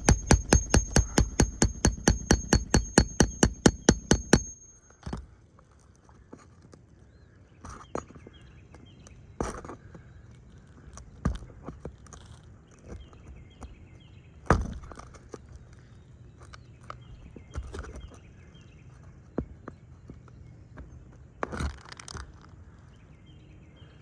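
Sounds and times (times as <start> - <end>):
loud thumps: 0.0 - 5.2
knocks and scuffs on shingle roof: 7.6 - 22.4.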